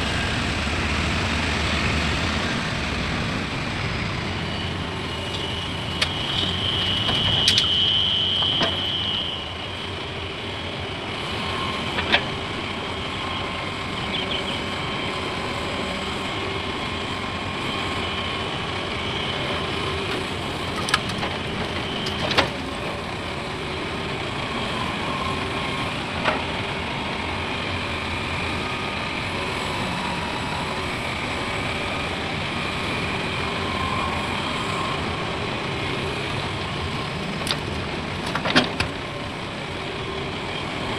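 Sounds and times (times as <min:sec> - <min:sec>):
high whine: 0:00.0 - 0:20.0
heavy diesel machinery running: 0:00.0 - 0:40.9.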